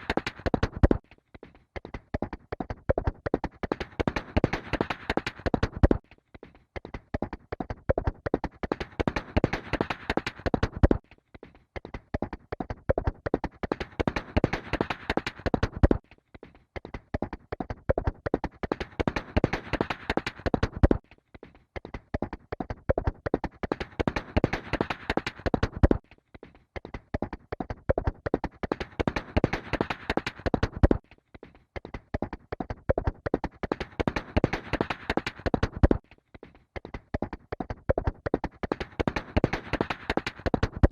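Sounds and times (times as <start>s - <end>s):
horse hooves galloping: 0.0s - 1.0s, 1.8s - 6.0s, 6.9s - 11.0s, 11.9s - 16.0s, 17.1s - 21.0s, 21.9s - 26.0s, 26.8s - 31.0s, 31.8s - 36.0s, 36.8s - 40.9s.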